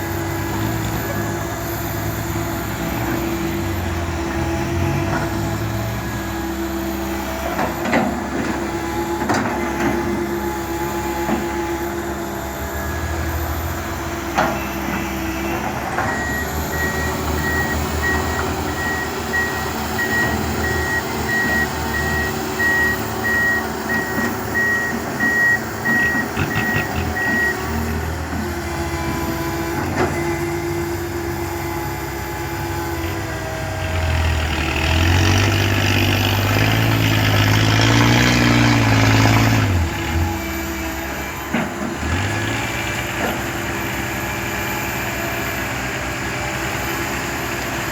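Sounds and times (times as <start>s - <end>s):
engine revving: 0.0s - 43.5s
diesel machinery running: 0.0s - 47.9s
reversing alarm beeping: 8.9s - 28.1s.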